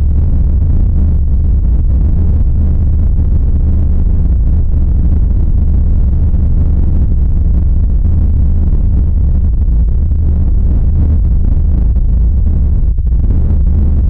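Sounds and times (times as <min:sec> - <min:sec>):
eerie low droning rumble: 0:00.0 - 0:14.0.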